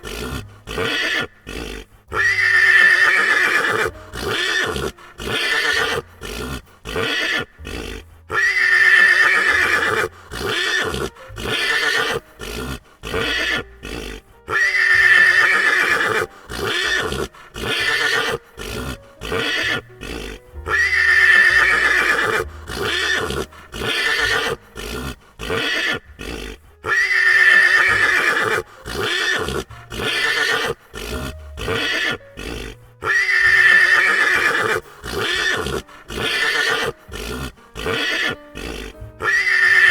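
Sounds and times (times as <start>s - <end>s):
horse neighing: 0.0s - 39.9s
short choppy horse sounds: 0.0s - 39.9s.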